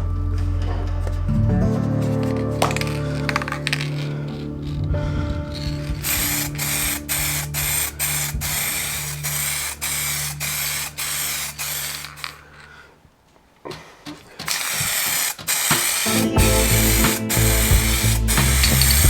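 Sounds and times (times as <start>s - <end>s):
hand tool rasping on wood: 14.1s - 19.0s.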